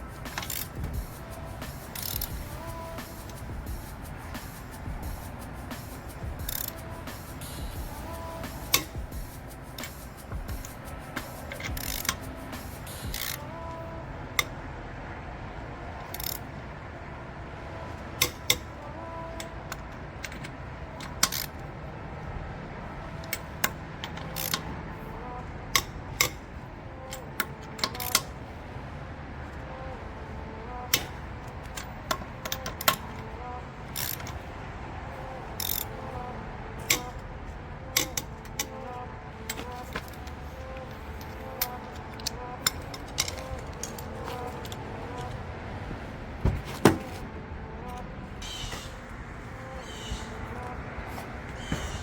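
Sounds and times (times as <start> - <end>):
steady low hum: 0.0 - 52.0
metal tools clicking and clinking: 11.4 - 12.2.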